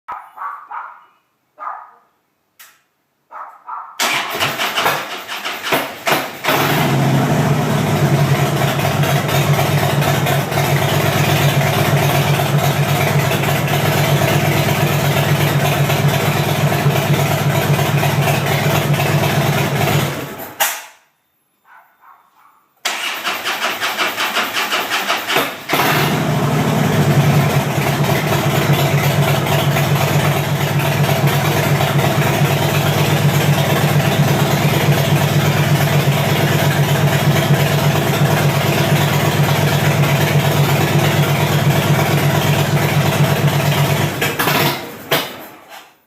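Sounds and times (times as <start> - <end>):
electric starter cranking: 4.0 - 7.6, 22.8 - 26.5
motorcycle engine running: 6.4 - 20.4, 25.7 - 45.0.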